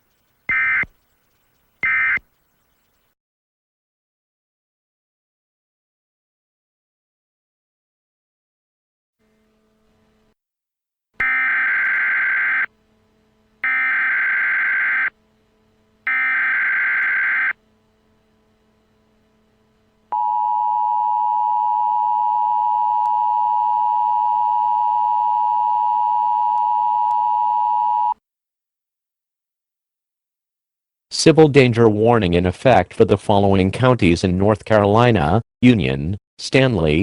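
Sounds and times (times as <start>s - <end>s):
screeching digital data tones: 0.1s - 3.0s, 11.2s - 12.7s, 13.6s - 15.1s, 16.1s - 17.6s.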